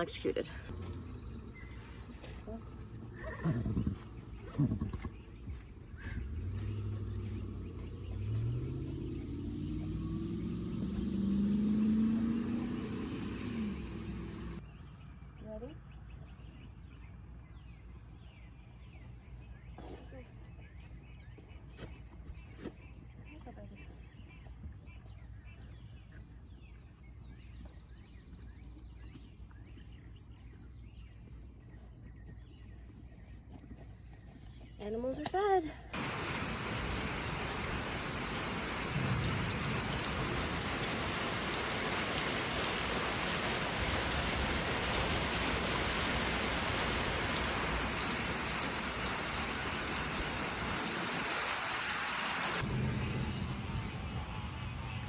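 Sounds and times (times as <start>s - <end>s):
small birds chirping: 0.0s - 51.8s
vehicle engine speeding up: 6.0s - 14.6s, 36.0s - 55.0s
low rumble: 52.6s - 55.0s.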